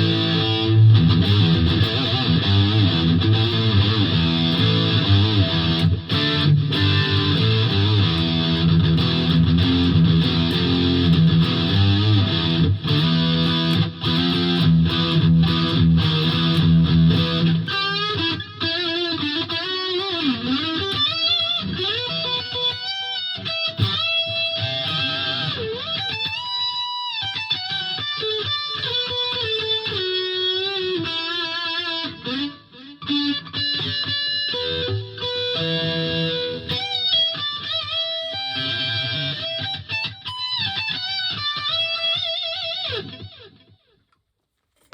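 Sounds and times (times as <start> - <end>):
electric guitar heavy chords: 0.0 - 26.2, 29.1 - 37.4
electric guitar lead lines: 0.0 - 43.6.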